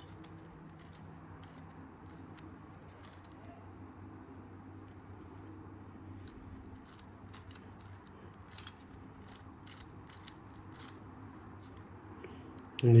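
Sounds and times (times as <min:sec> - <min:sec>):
puzzle cube turning clicks: 0:00.1 - 0:03.5, 0:06.2 - 0:11.0.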